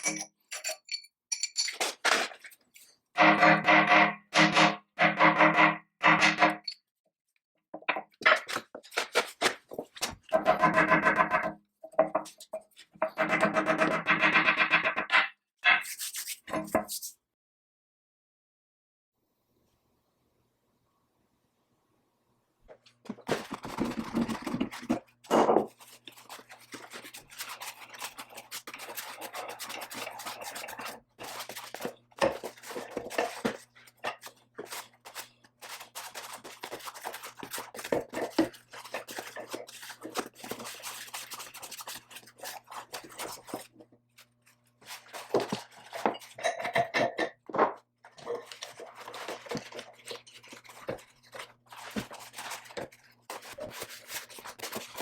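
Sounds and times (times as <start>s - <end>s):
metal parts scraping and clinking: 0.0s - 2.9s.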